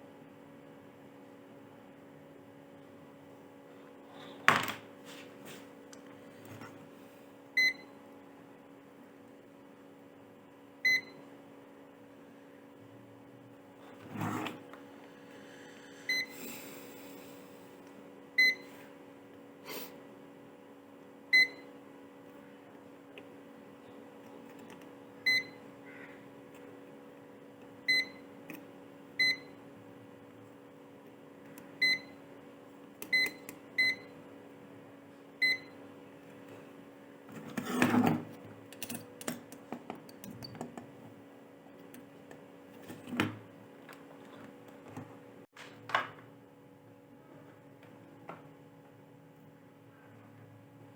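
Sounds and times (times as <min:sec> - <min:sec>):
steady low hum: 0:00.0 - 0:45.5.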